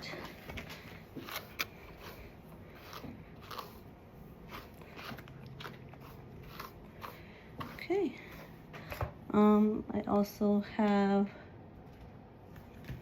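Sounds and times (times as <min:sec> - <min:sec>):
brush scratching through dog fur: 0:00.2 - 0:08.6.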